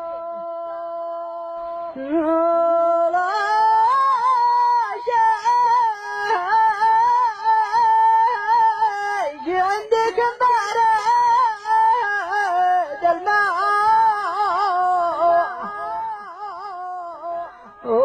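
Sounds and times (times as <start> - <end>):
man singing unaccompanied folk song: 1.0 - 18.0.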